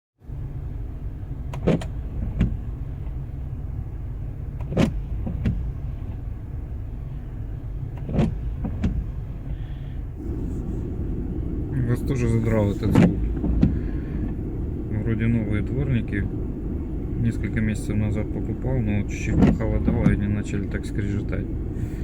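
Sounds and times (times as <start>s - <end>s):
steady low rumble: 0.2s - 22.0s
wipers squeaking on windscreen: 7.9s - 9.2s.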